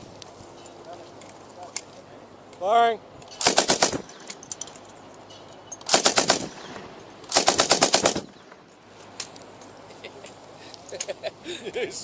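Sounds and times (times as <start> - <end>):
machine gun bursts: 3.4 - 4.2, 5.9 - 6.6, 7.3 - 8.4.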